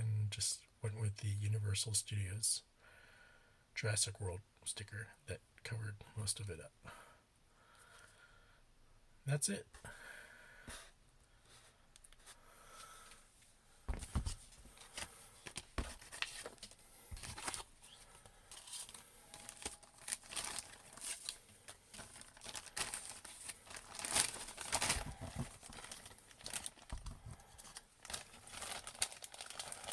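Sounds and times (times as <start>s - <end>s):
crinkling and rustling: 13.1s - 29.9s.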